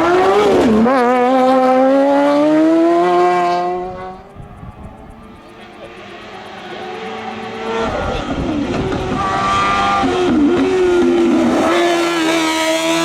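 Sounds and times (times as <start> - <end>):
race car engine accelerating: 0.0 - 13.0.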